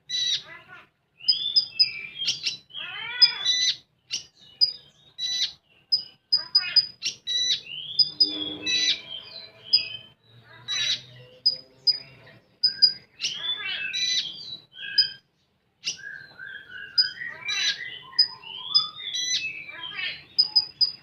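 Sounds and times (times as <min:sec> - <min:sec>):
songbird whistling and trilling: 0:01.2 - 0:10.2, 0:12.6 - 0:21.0.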